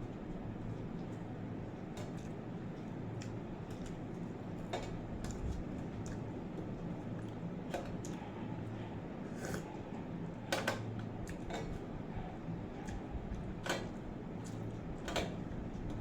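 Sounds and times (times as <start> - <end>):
steady low hum: 0.0 - 16.0
person chewing food: 5.2 - 10.0, 11.2 - 11.8.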